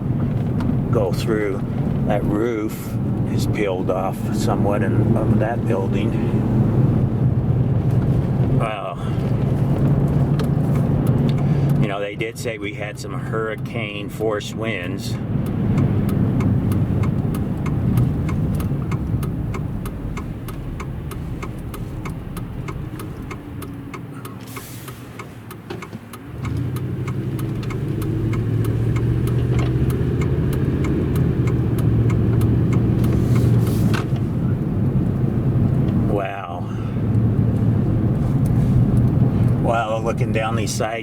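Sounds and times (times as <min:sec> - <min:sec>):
car engine and road noise: 0:00.0 - 0:41.0
steady ticking: 0:09.3 - 0:36.4.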